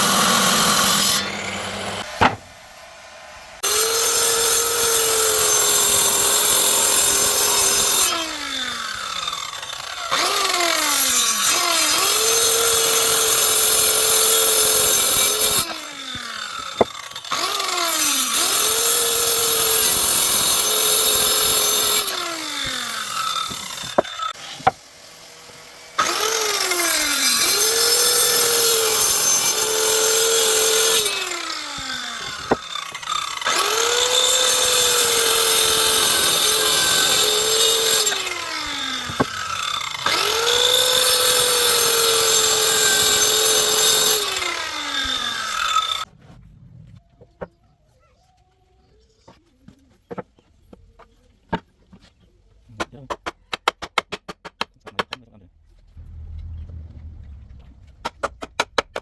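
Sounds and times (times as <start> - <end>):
power tool cutting wood: 0.0 - 46.1
sharp knocks: 2.0 - 2.6.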